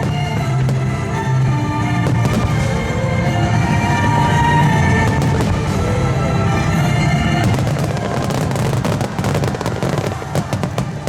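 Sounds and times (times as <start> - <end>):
fireworks cracking and popping: 0.0 - 1.0, 2.0 - 2.9, 4.0 - 5.9, 7.4 - 11.0
music: 0.0 - 11.0.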